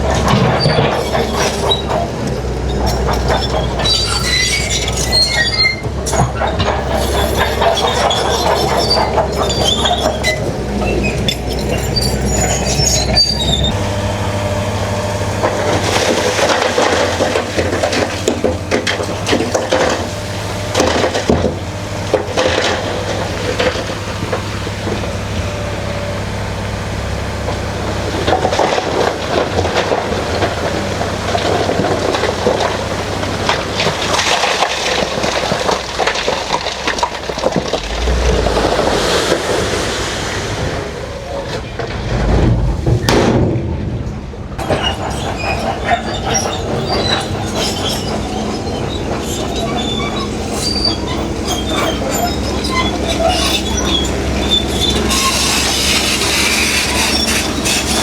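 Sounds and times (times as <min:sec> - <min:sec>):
diesel engine under load: 0:00.0 - 0:58.0
steel tracks clanking and squealing: 0:00.0 - 0:58.0
rock grinding under blade: 0:28.4 - 0:41.2, 0:45.0 - 0:58.0.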